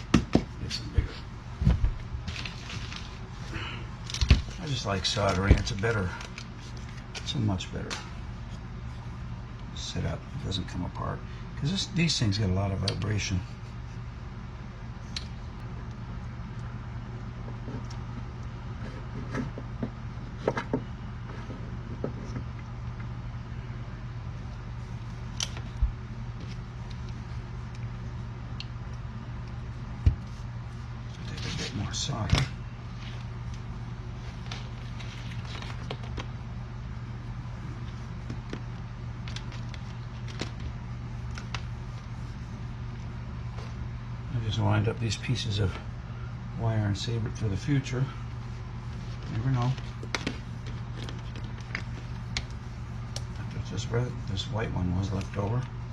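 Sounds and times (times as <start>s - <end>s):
steady low hum: 0.0s - 55.9s
small clicks and crackles: 34.2s - 36.4s, 37.8s - 42.1s.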